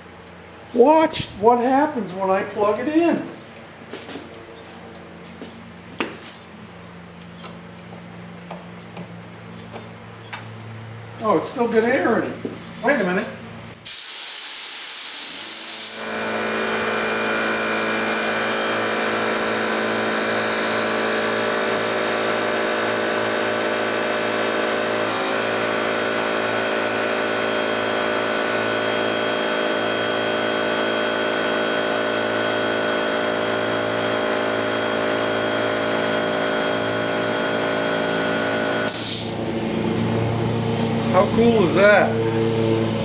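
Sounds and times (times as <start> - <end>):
electric air compressor running: 13.7 - 43.0.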